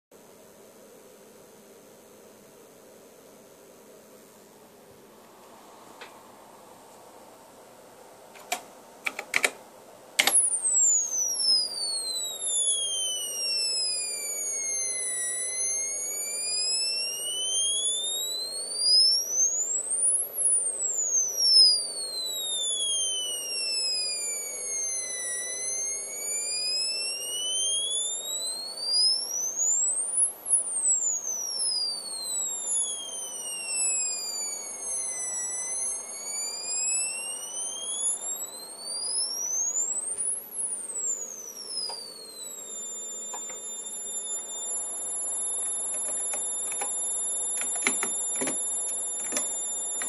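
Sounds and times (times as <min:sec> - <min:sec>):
sharp clicks: 0:08.4 - 0:09.6, 0:10.2 - 0:12.1, 0:43.2 - 0:44.6, 0:45.6 - 0:50.0
electronic tone sweeping in pitch: 0:10.2 - 0:50.0.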